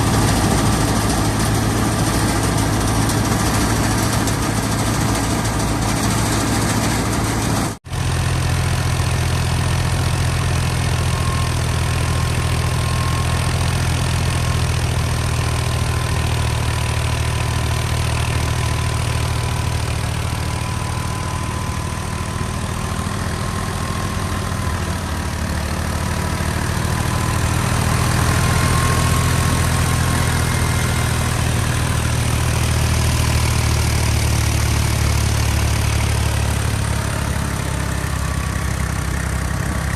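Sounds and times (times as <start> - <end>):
thresher mechanical din: 0.0 - 7.8
tractor diesel engine running: 0.0 - 39.9.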